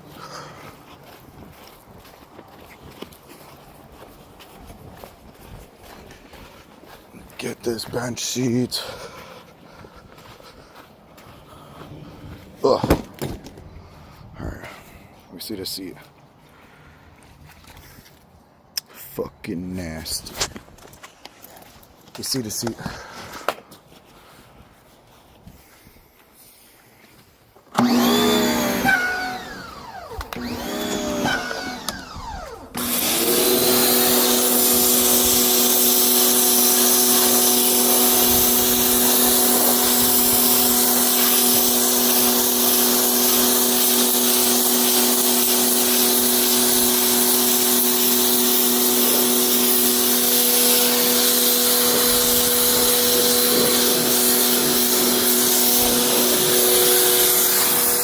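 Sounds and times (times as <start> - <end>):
pressure washer motor whining: 27.8 - 58.0
water spray hissing: 33.6 - 58.0.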